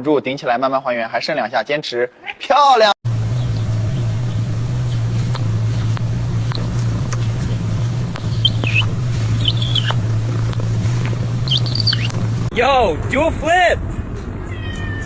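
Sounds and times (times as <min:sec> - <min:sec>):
low hum: 0:03.1 - 0:12.5
faint ticks: 0:04.0 - 0:12.5
short high chirps: 0:08.0 - 0:10.0, 0:11.3 - 0:12.3.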